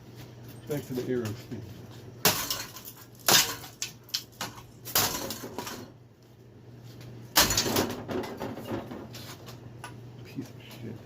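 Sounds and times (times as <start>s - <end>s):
ceiling fan being smashed: 2.2s - 6.0s, 7.3s - 9.6s.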